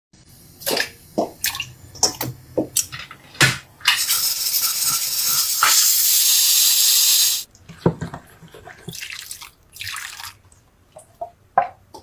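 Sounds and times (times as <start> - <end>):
steady hiss: 4.0 - 7.5.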